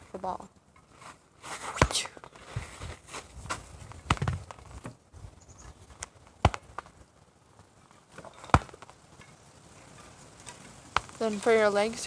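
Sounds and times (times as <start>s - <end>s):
gloves whacking plastic punching ball: 6.4s - 6.9s, 8.5s - 8.9s.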